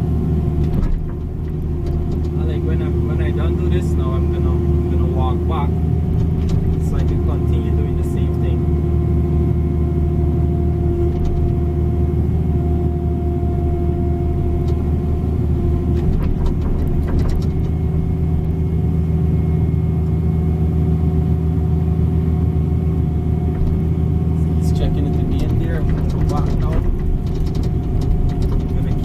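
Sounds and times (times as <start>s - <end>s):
excavator engine running: 0.0s - 29.0s
faint clicks and scrapes: 6.1s - 7.6s, 14.6s - 18.6s, 24.6s - 29.0s.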